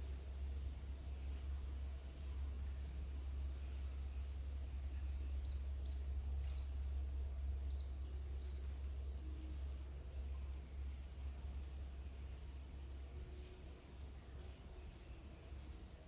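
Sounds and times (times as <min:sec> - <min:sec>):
steady low hum: 0:00.0 - 0:16.0
small bird chirping: 0:04.2 - 0:07.0, 0:07.6 - 0:09.4.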